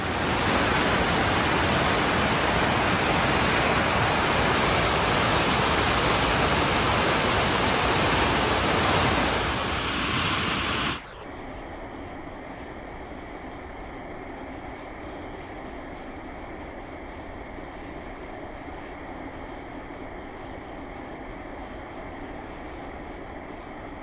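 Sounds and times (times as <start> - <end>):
waterfall rushing: 0.0 - 11.1.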